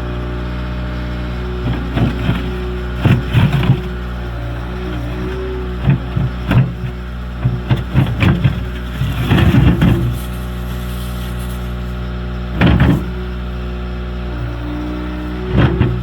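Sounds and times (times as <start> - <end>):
skid steer engine running: 0.0 - 16.0
rocks clanking and scraping: 0.1 - 16.0.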